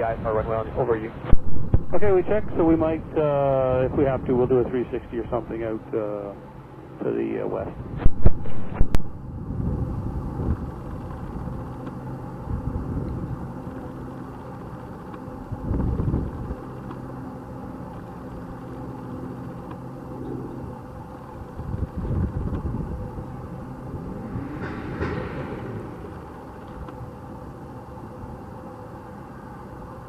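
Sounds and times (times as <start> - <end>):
low engine rumble: 0.0 - 30.0
steady hum: 0.0 - 30.0
rising engine tone: 8.7 - 30.0.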